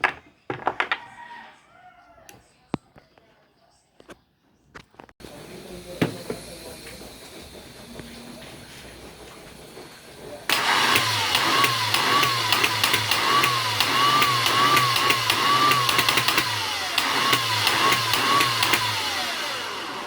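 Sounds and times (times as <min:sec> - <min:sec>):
starter motor cranking engine: 0:05.2 - 0:20.0
engine starting: 0:08.9 - 0:20.0
sharp clicks: 0:10.5 - 0:19.0.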